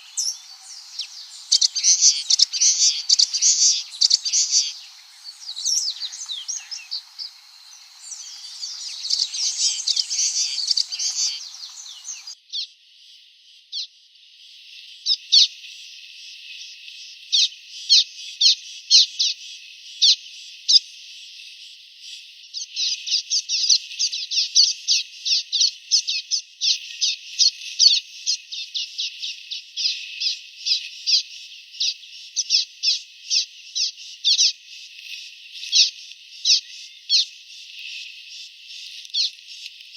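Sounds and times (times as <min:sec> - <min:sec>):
small bird chipping and twittering: 0:00.0 - 0:12.7.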